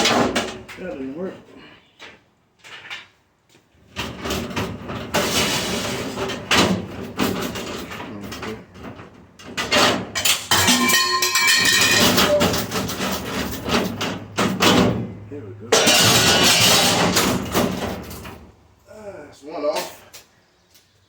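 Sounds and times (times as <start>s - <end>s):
tools clanking on stainless steel: 9.6s - 15.0s, 15.7s - 18.5s
metallic ringing: 10.5s - 12.7s.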